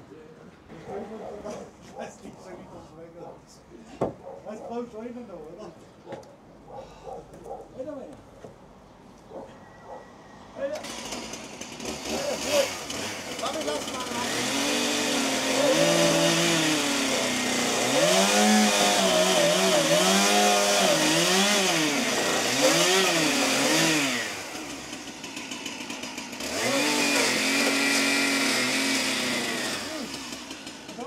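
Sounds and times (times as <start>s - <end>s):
chainsaw revving: 10.7s - 31.0s.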